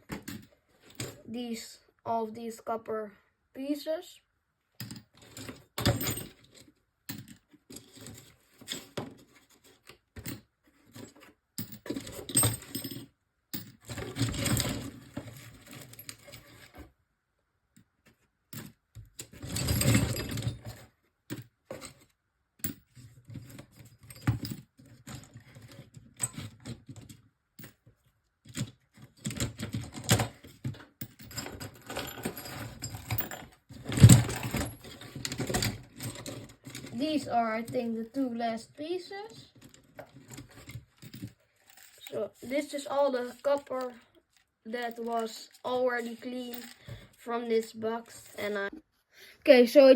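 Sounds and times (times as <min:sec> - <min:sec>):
scrap metal clinking and clattering: 0:04.8 - 0:16.8, 0:18.5 - 0:27.8, 0:28.5 - 0:37.8, 0:39.3 - 0:48.7.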